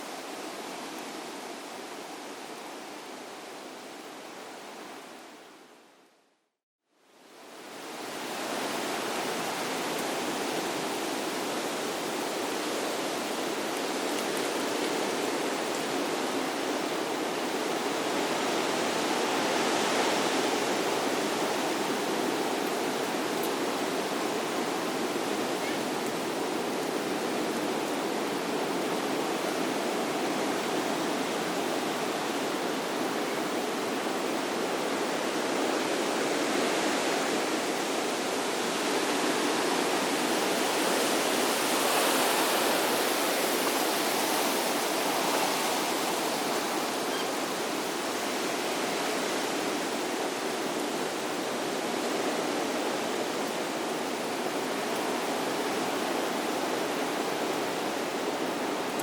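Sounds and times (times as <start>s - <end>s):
running water rushing: 7.7s - 59.0s.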